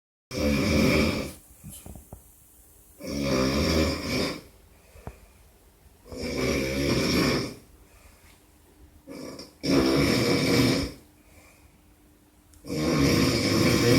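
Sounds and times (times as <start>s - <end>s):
man snoring loudly: 0.3s - 1.4s, 3.0s - 4.5s, 6.1s - 7.7s, 9.1s - 11.0s, 12.6s - 13.9s
quiet breaths: 0.8s - 9.6s, 10.8s - 13.9s.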